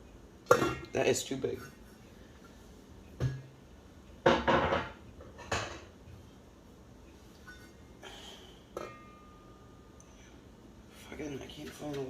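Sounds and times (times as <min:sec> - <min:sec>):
pots and pans clattering: 0:00.5 - 0:01.8, 0:03.2 - 0:03.6, 0:04.2 - 0:05.9.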